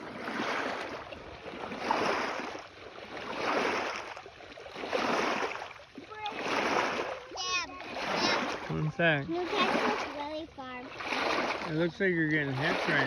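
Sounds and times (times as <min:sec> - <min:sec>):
small waves washing in: 0:00.0 - 0:13.0.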